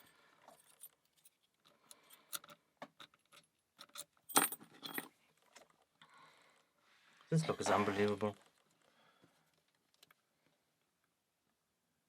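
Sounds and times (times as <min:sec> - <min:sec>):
lock picks clicking in padlock: 0:00.9 - 0:04.3
metal jangling clatter: 0:03.3 - 0:05.1.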